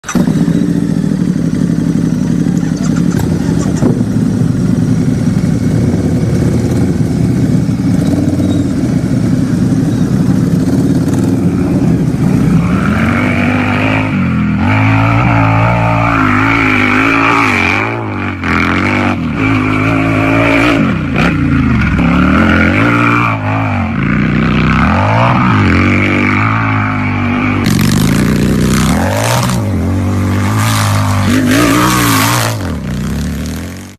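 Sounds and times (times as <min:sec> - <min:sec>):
motorcycle engine idling and revving: 0:00.0 - 0:33.9.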